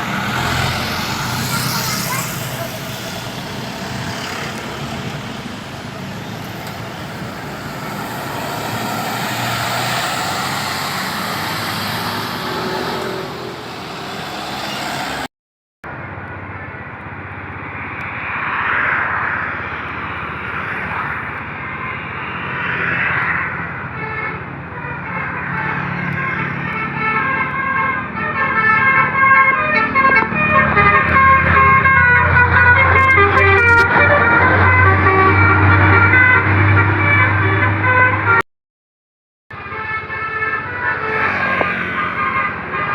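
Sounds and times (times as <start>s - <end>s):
diesel buses passing: 0.0s - 15.3s, 15.9s - 38.4s, 39.6s - 42.9s.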